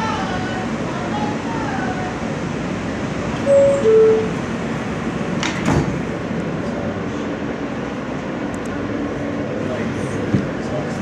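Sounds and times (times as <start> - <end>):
subway car rumble: 0.0 - 11.0
two-note door chime: 3.4 - 4.4
sliding doors clunk: 5.4 - 6.1.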